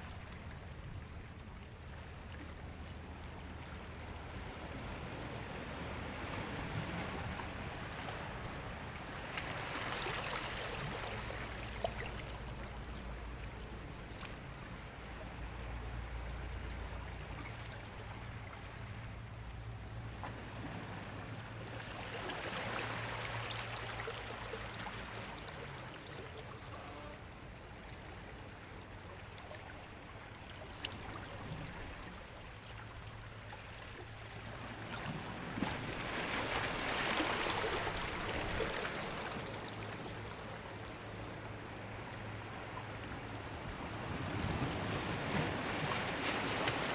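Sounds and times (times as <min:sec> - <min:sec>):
ocean waves washing ashore: 0:33.4 - 0:46.9.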